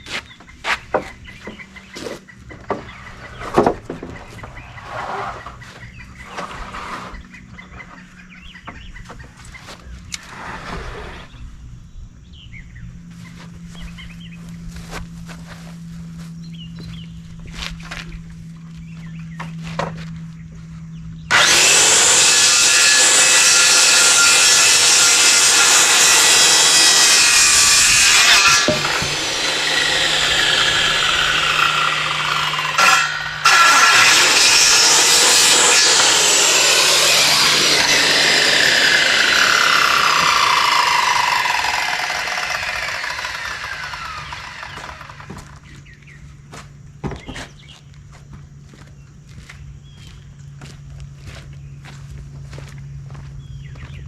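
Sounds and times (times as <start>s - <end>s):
saw blade winding down whine: 21.3s - 45.7s
electric power saw cutting boards: 21.3s - 45.9s.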